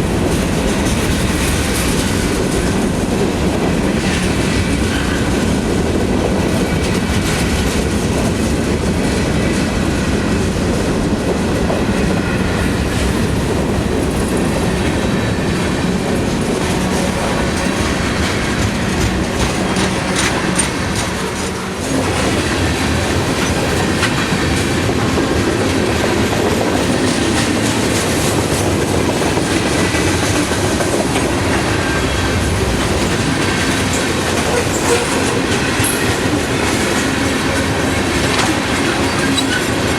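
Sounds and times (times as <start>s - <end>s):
freight train rumbling: 0.0s - 39.9s
wheels clicking over rail joints: 16.2s - 39.9s
wheels squealing on rails: 31.0s - 39.9s.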